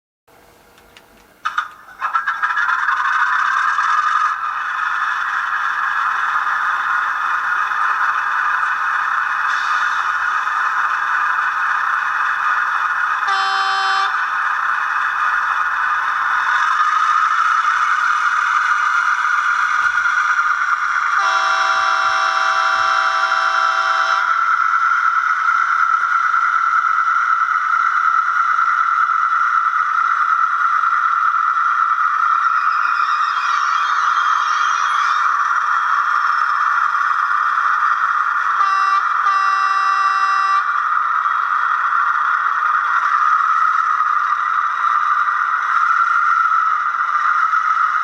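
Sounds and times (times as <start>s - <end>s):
train horn blast: 13.2s - 14.3s, 21.2s - 24.4s, 38.6s - 40.7s
tinny diesel engine sound from speaker: 21.1s - 24.4s.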